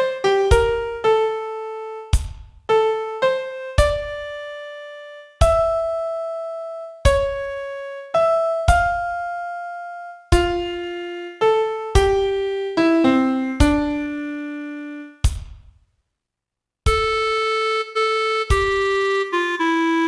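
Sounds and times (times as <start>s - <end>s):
piano melody: 0.0s - 15.2s.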